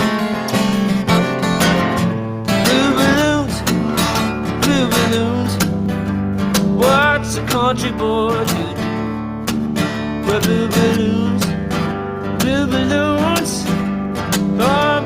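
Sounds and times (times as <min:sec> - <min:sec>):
acoustic guitar strumming: 0:00.0 - 0:15.0
person singing: 0:02.5 - 0:05.8, 0:06.7 - 0:09.0, 0:10.2 - 0:11.6, 0:12.4 - 0:13.8, 0:14.5 - 0:15.0.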